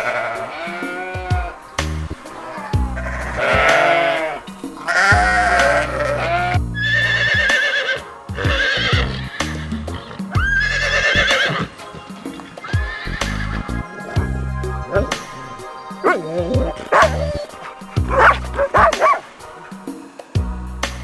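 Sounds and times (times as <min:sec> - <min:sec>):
farm animal calls: 0:00.0 - 0:19.9
background music: 0:00.0 - 0:21.0.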